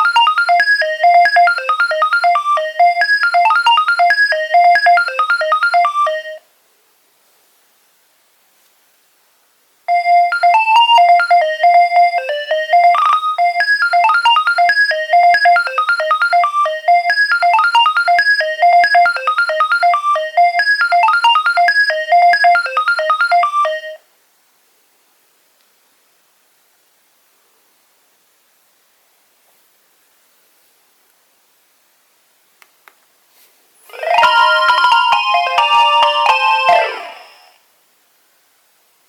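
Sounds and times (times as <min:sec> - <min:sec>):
mobile phone ringtone melody: 0:00.0 - 0:06.4, 0:09.9 - 0:24.0, 0:33.9 - 0:37.6.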